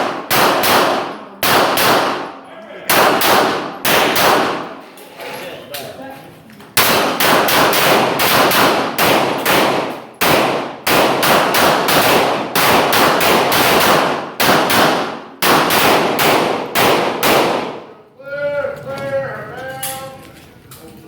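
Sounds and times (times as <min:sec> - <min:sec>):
rapid pistol fire: 0:00.0 - 0:04.8, 0:06.8 - 0:17.9.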